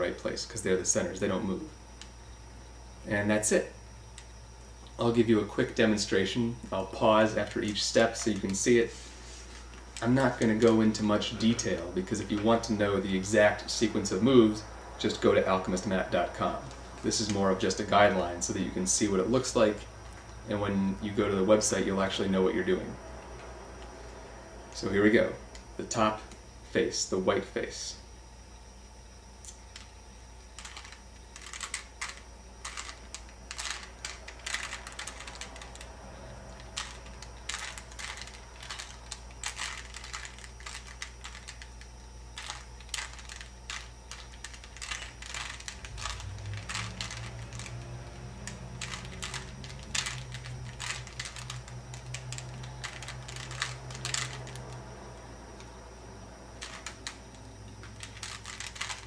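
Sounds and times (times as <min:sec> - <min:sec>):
puzzle cube layers clicking: 0:42.4 - 0:54.7, 0:57.9 - 0:59.0.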